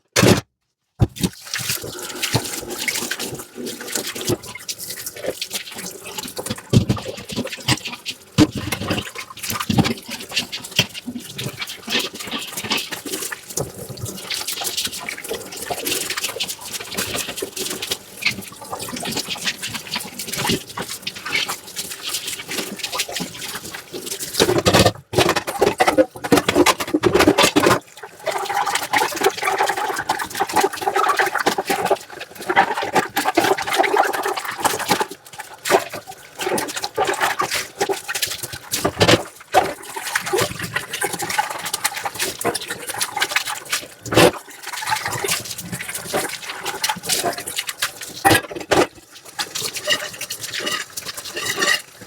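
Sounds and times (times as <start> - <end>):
water running over dishes: 1.0 - 52.0
sponge scrubbing: 27.4 - 52.0
dishes clinking: 49.8 - 51.9.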